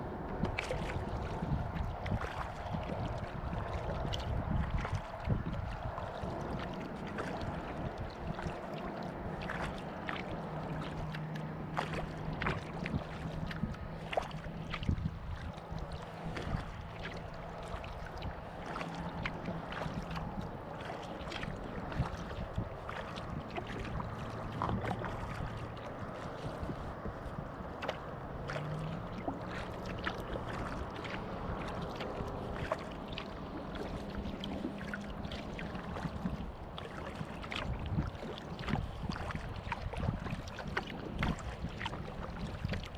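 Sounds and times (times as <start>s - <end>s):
kayak paddle strokes in water: 0.0s - 42.9s
small water splashes and drips: 0.0s - 42.9s.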